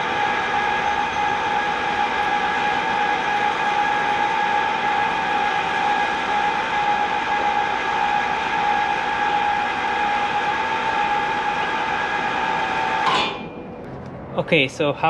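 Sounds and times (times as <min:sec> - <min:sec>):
electric crane warning horn: 0:00.0 - 0:14.4.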